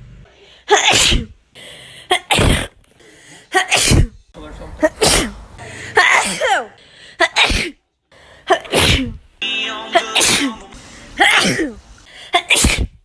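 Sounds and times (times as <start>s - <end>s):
person sneezing: 0.7s - 1.4s, 2.1s - 2.8s, 4.9s - 7.8s, 8.5s - 9.2s, 11.2s - 13.0s
voiced cry after sneeze: 0.7s - 1.4s, 4.8s - 7.8s.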